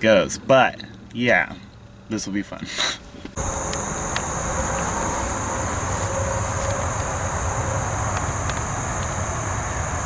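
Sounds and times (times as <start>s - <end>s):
high-pitched insect drone: 3.4s - 10.0s.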